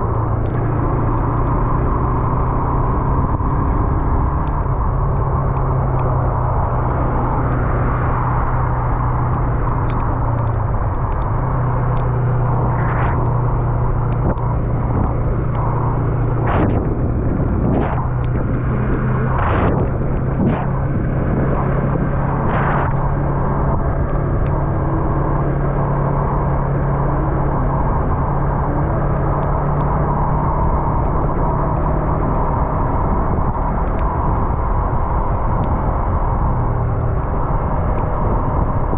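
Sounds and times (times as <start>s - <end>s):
motorcycle engine cruising: 0.0s - 38.9s
tyre noise on wet road: 0.0s - 38.9s
wind rushing: 6.2s - 38.9s
brief whooshes: 12.4s - 13.6s.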